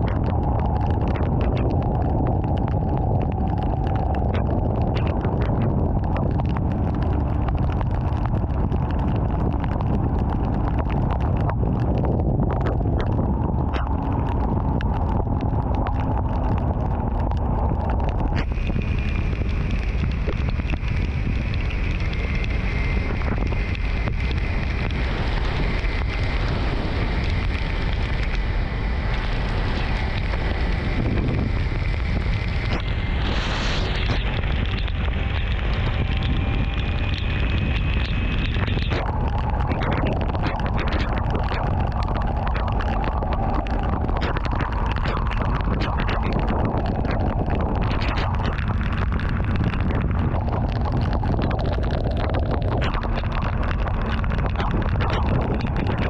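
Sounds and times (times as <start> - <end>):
wind buffeting microphone: 0.0 - 56.0
vehicle road noise: 12.6 - 55.9.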